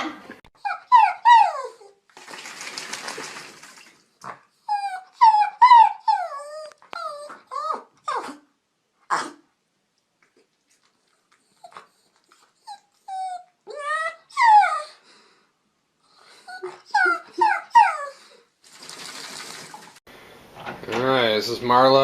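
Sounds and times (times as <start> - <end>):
dog whining: 0.6 - 2.0, 4.6 - 8.5, 11.4 - 15.0, 16.2 - 18.4.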